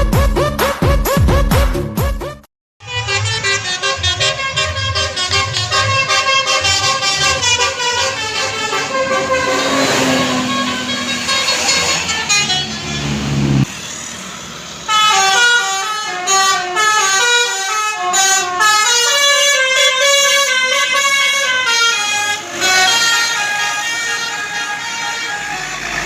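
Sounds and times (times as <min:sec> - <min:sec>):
multi-tone bus horn melody: 0:02.2 - 0:13.7, 0:14.8 - 0:26.0
traffic noise: 0:02.8 - 0:26.0.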